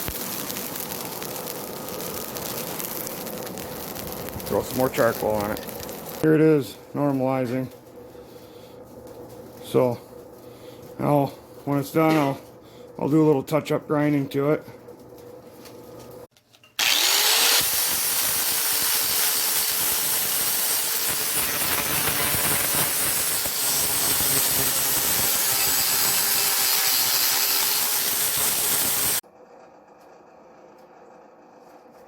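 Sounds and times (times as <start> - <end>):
electric grinder grinding steel: 16.8 - 29.2.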